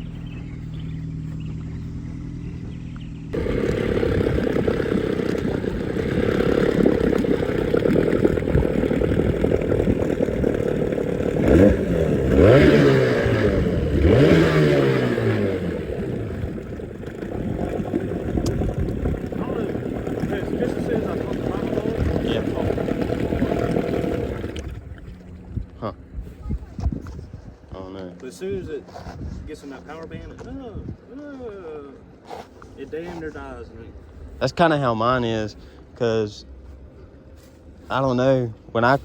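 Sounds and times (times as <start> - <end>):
boat motor running rough: 0.0 - 31.0
vehicle engine humming: 0.0 - 39.0.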